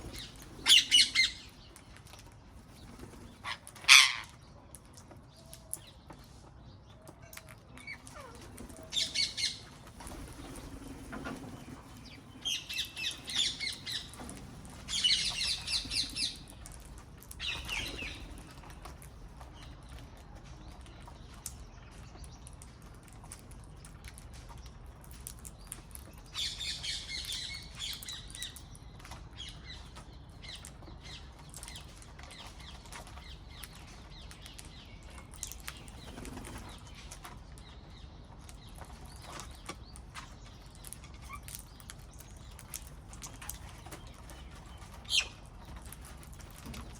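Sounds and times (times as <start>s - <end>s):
parrots chattering: 0.0s - 1.5s, 3.3s - 4.3s.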